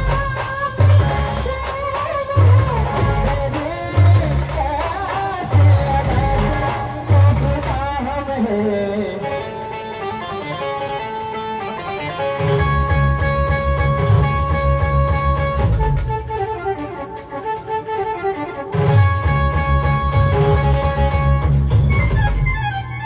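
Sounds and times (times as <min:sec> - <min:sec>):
brass band melody: 0:00.0 - 0:07.8, 0:12.4 - 0:22.7
steady drum beat: 0:00.0 - 0:08.1.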